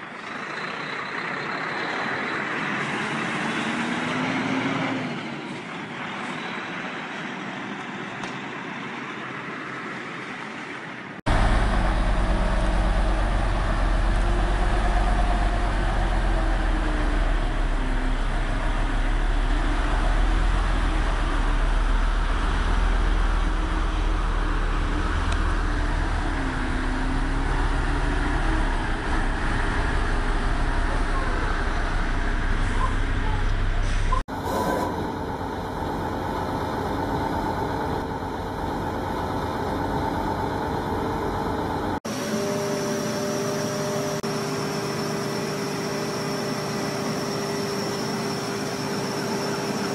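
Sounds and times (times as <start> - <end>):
deep engine rumble: 11.3 - 42.0.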